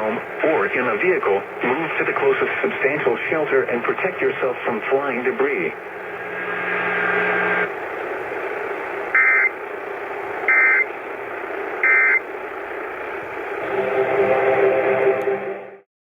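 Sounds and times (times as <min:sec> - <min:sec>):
broadcast hiss: 0:00.0 - 0:15.8
warbling digital data tones: 0:09.0 - 0:09.6, 0:10.4 - 0:11.0, 0:11.8 - 0:12.3.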